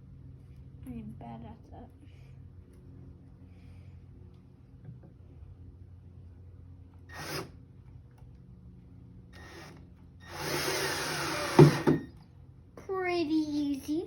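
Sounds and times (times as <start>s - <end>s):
cordless drill driving screw: 7.1s - 7.6s, 9.4s - 12.1s.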